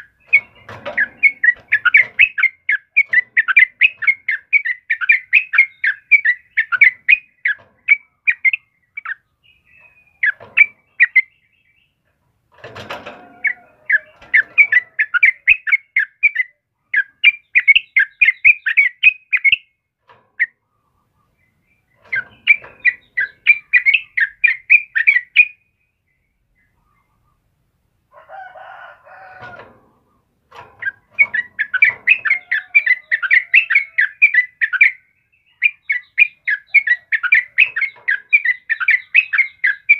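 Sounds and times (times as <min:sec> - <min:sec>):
bulbuls chattering song: 0:00.0 - 0:39.9
rough low bird calls: 0:00.0 - 0:39.9.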